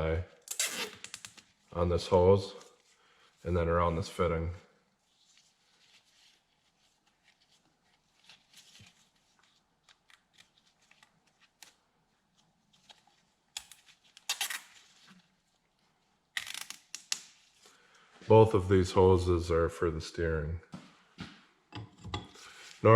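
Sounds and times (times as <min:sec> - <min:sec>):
faint handling rustles: 0:01.4 - 0:16.3.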